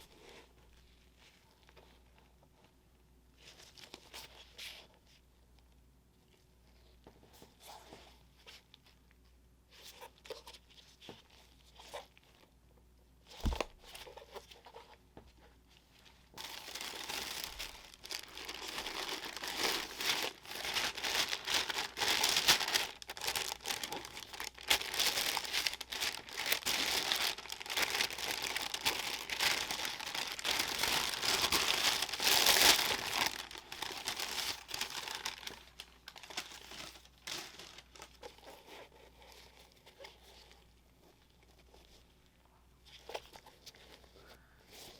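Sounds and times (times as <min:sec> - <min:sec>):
thump: 0:13.4 - 0:13.8
paper crackling and tearing: 0:16.4 - 0:38.5.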